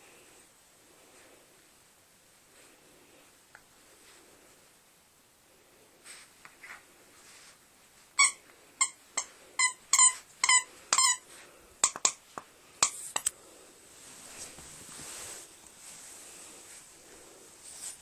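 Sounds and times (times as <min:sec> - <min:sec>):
squeaky dog toy squeaking: 0:08.2 - 0:11.2.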